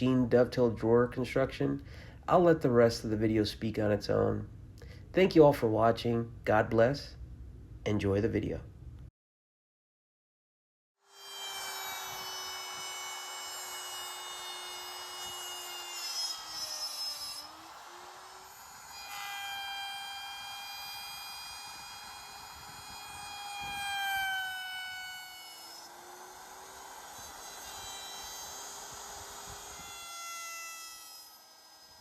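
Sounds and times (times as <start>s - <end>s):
electric router whining: 11.1s - 32.0s.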